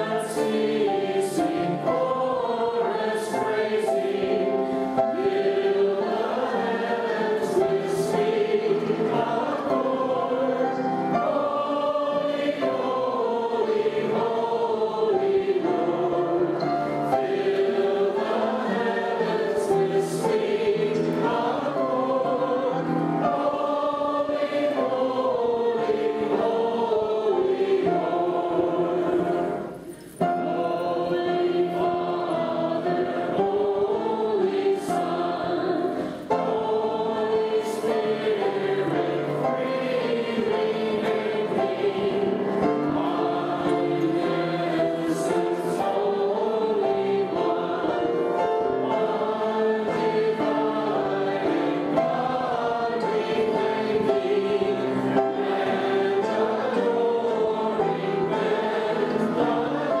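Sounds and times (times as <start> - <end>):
choir singing a hymn: 0.0 - 60.0.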